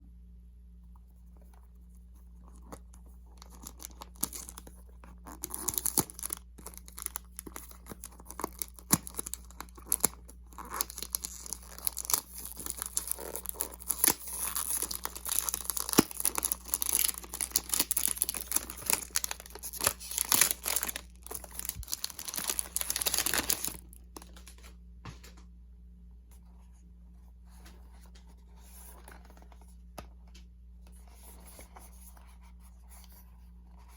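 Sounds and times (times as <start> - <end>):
faint steady hum: 0.0 - 33.9
packaging tearing and crinkling: 3.4 - 24.5.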